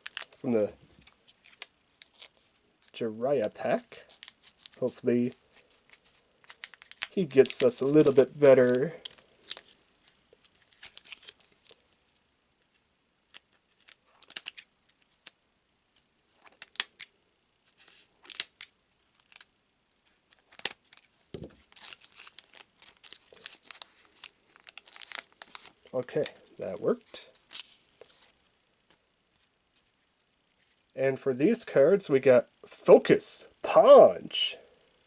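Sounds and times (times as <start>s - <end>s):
foil wrapper crinkling and tearing: 0.0s - 0.4s, 1.0s - 12.0s, 13.3s - 15.4s, 17.7s - 19.5s, 20.2s - 28.4s.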